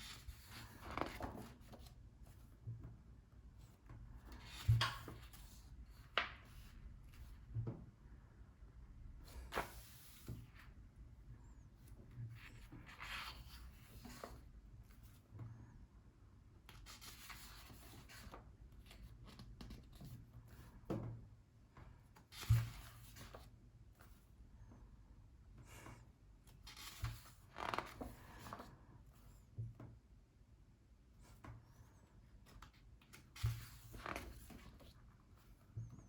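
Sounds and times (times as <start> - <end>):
paper pages turning: 0.0 - 1.9, 9.3 - 10.4, 12.4 - 14.4, 26.6 - 28.6.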